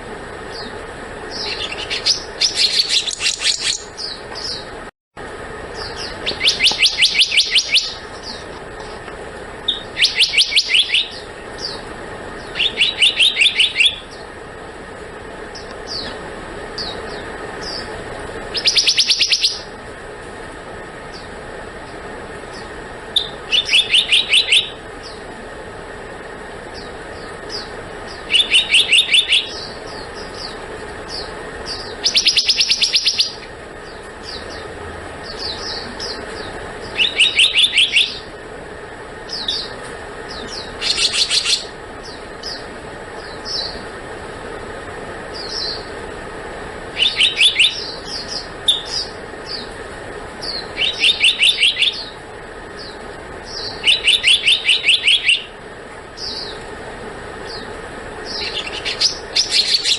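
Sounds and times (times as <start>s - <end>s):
bird calling rapid high notes: 1.3s - 4.7s, 5.7s - 8.6s, 9.6s - 14.3s, 16.8s - 19.8s, 23.1s - 25.3s, 26.8s - 33.5s, 34.2s - 38.3s, 39.3s - 43.8s, 46.9s - 49.7s, 50.4s - 55.6s
bird single chirps: 5.7s - 8.5s, 9.7s - 11.8s.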